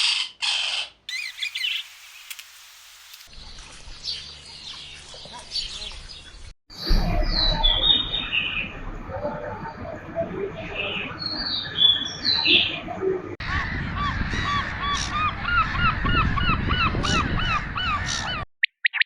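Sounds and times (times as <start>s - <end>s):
fast repeated pitched bird calls: 0.0s - 3.0s
high chirping bird calls: 0.0s - 3.5s.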